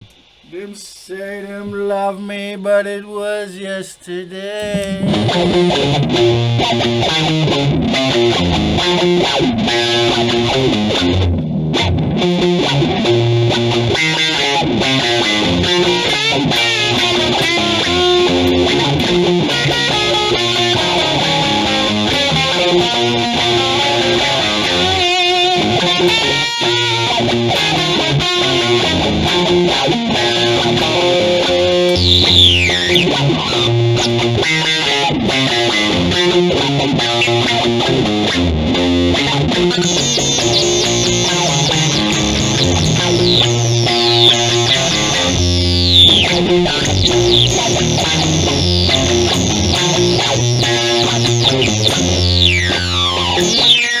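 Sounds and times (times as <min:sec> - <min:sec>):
distorted electric guitar: 0:03.9 - 0:54.0
low bass line: 0:31.9 - 0:33.2, 0:39.8 - 0:53.8.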